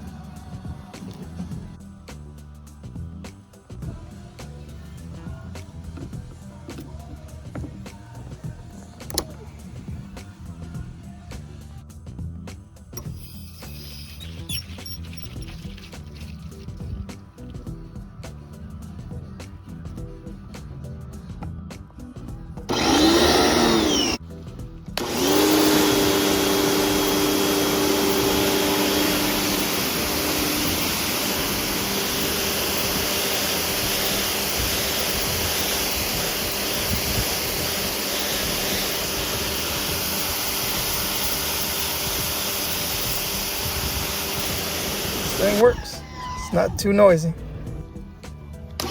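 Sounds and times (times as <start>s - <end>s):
spray hissing: 13.0s - 14.6s, 25.3s - 45.9s
pressure washer motor running: 22.7s - 24.2s, 25.0s - 45.9s.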